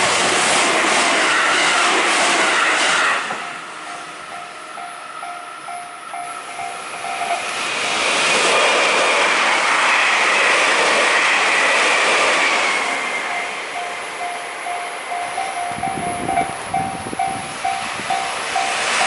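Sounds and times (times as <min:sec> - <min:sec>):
train passing: 0:00.0 - 0:19.0
high whine: 0:03.0 - 0:08.4, 0:12.3 - 0:19.0
level crossing bell ringing: 0:03.8 - 0:07.5, 0:13.3 - 0:19.0.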